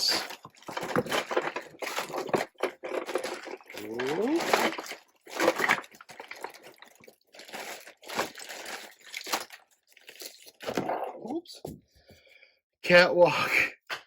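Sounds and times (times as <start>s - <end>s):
paper and bubble wrap crinkling: 0.0s - 10.8s
person saying ooh: 3.8s - 4.5s.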